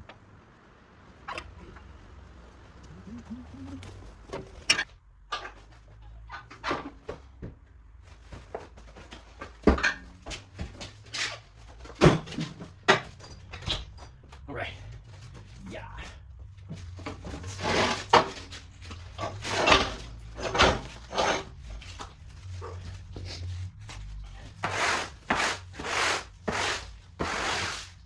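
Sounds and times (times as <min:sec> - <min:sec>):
footsteps and scuffs: 0:14.2 - 0:25.7.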